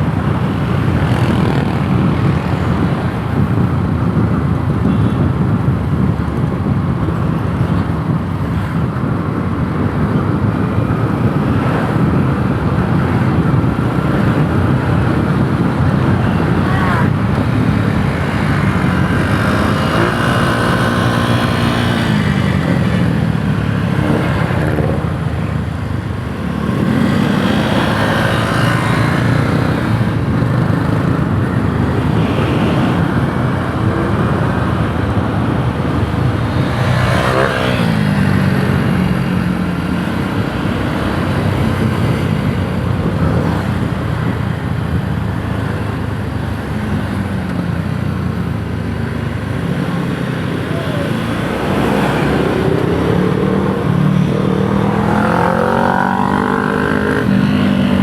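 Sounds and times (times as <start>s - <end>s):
motorcycle engine revving: 50.3s - 58.0s.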